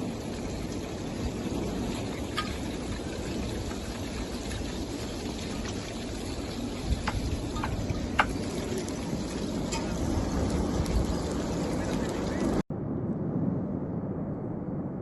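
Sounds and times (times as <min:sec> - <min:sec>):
lava low rushing noise: 0:00.0 - 0:15.0.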